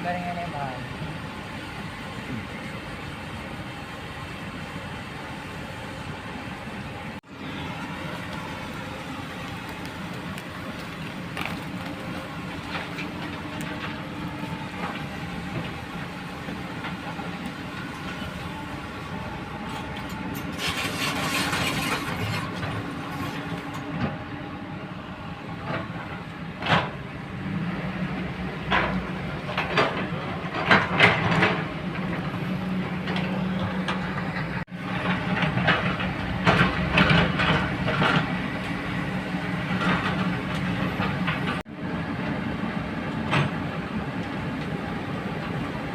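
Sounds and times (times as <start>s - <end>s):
excavator diesel engine running: 0.0s - 45.9s
scraping noise: 20.5s - 23.5s.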